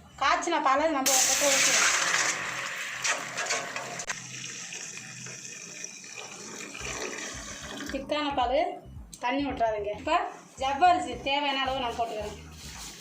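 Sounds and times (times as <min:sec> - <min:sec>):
milk pouring into a pan: 0:01.1 - 0:07.9.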